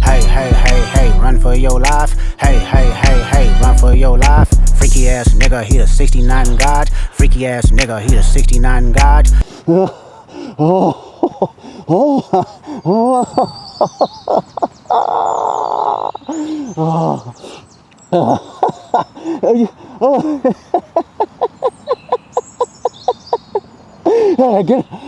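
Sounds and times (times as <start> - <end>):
high bird chirps: 12.8 - 19.2, 21.3 - 24.1.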